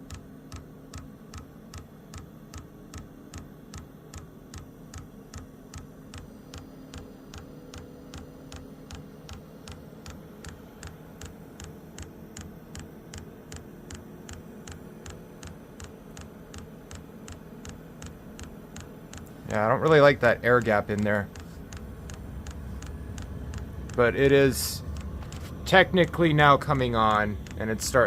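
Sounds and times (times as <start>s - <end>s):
low steady hum: 0.0s - 28.0s
fuel pump clicking: 20.5s - 27.9s.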